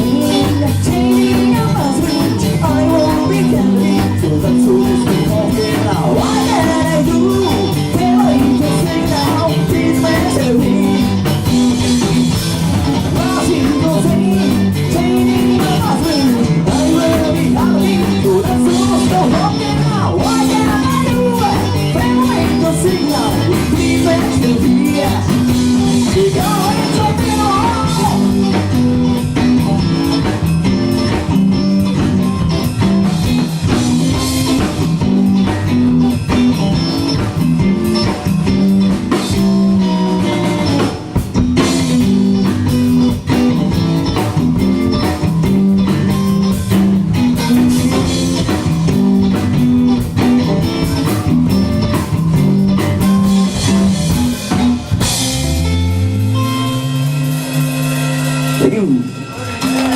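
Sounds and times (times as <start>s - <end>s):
live rock band playing: 0.0s - 59.9s.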